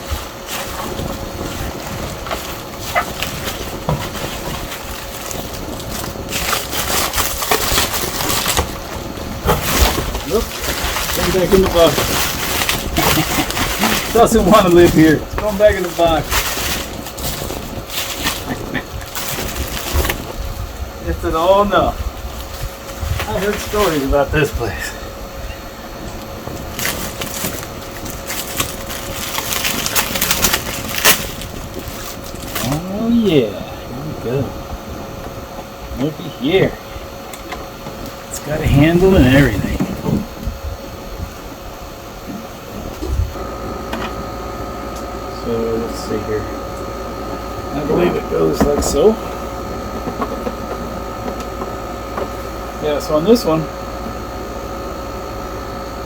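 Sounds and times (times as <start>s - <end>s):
cardboard packaging rustling: 0.0s - 20.6s, 25.9s - 33.5s.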